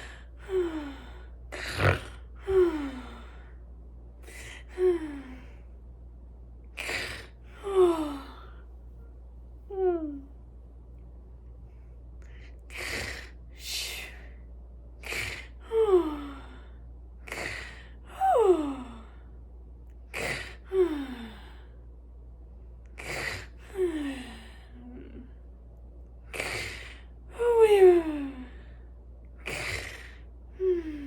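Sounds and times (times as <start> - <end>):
woman mock snoring: 1.6 - 3.1, 12.7 - 13.3, 17.3 - 17.8, 20.2 - 20.6, 23.0 - 23.5, 29.4 - 31.0.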